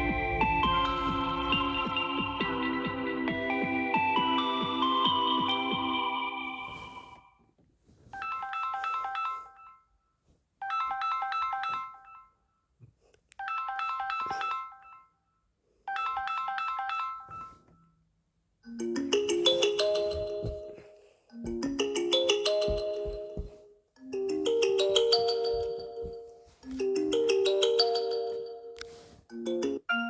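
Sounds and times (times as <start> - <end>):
bright chiming ringtone: 0.0 - 7.3, 8.2 - 9.9, 13.4 - 15.2, 15.9 - 17.7, 18.7 - 30.0
low full ringtone melody: 0.0 - 7.3, 8.1 - 10.0, 10.6 - 12.5, 13.4 - 17.9, 18.6 - 30.0
melodic ringtone: 0.0 - 7.3, 8.2 - 9.9, 10.6 - 12.3, 13.4 - 15.1, 15.9 - 17.7, 18.7 - 30.0.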